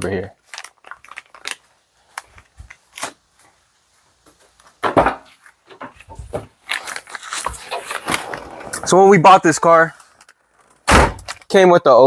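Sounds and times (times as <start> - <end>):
rustling handling noise: 0.0 - 11.5
footsteps: 2.1 - 9.0
knocks and thuds: 4.8 - 5.3.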